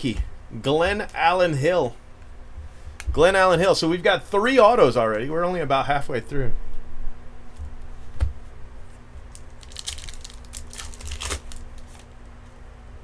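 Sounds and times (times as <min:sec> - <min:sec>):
wrapper tearing and crinkling: 0:09.3 - 0:12.1.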